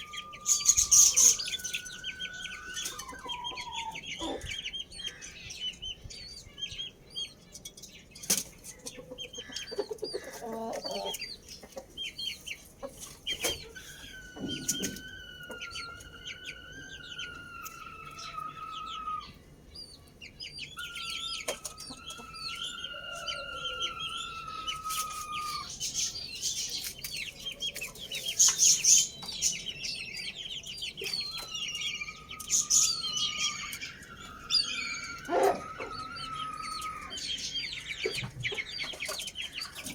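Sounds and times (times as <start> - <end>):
roosters crowing: 0.0 - 5.4, 13.5 - 19.7, 20.6 - 26.4, 30.5 - 39.9
small birds chirping: 0.0 - 39.9.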